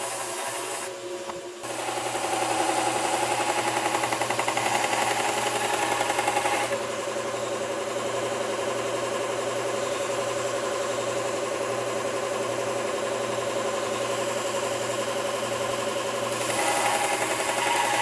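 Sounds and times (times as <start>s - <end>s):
belt sander humming: 1.6s - 7.0s, 16.3s - 18.0s
chisel grinding on sander belt: 16.3s - 18.0s.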